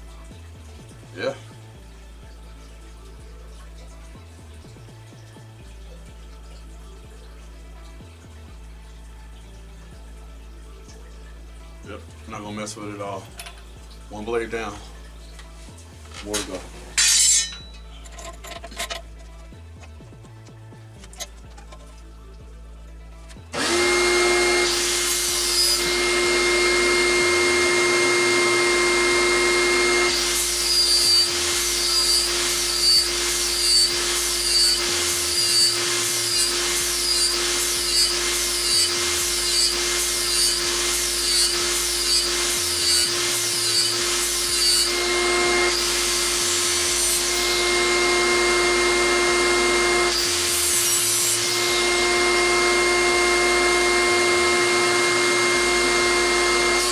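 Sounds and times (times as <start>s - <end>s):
angle grinder grinding metal: 16.1s - 18.3s, 23.6s - 56.9s.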